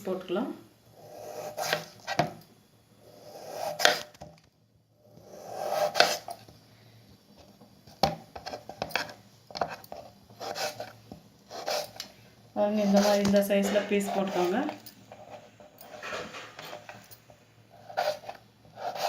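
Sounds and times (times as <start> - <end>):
knife slicing potato: 1.0 - 2.3, 3.2 - 4.2, 5.2 - 6.4, 8.5 - 12.1, 12.7 - 15.4, 17.8 - 19.0.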